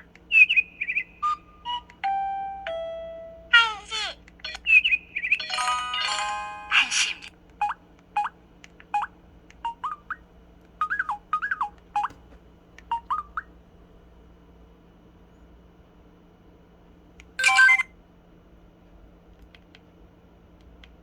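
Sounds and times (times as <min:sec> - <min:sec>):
bright electronic chime: 0:17.4 - 0:17.9
electronic clicks and blips: 0:17.4 - 0:17.9.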